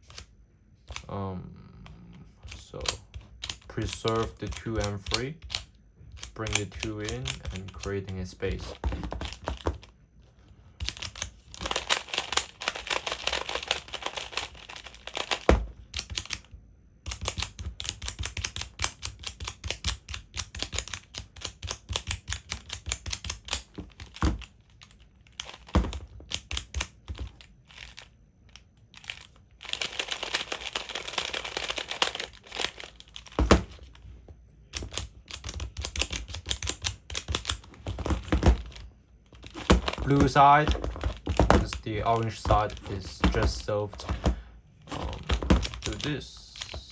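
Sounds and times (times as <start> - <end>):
plastic puzzle tiles clicking: 44.9 - 46.9.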